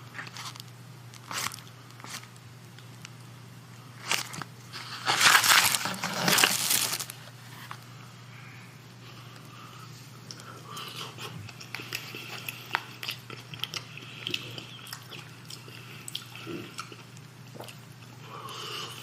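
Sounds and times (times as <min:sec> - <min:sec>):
person chewing food: 0:00.0 - 0:03.1, 0:09.2 - 0:19.0
low electrical hum: 0:00.0 - 0:19.0.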